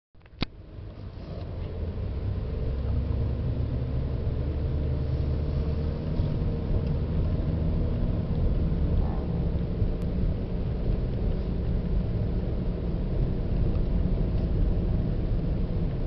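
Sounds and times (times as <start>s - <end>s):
car driving low rumble: 0.2s - 16.0s.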